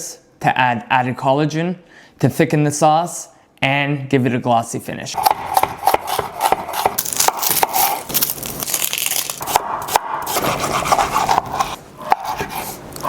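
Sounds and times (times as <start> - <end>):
knife sawing and scraping: 5.2 - 8.1, 9.3 - 13.0.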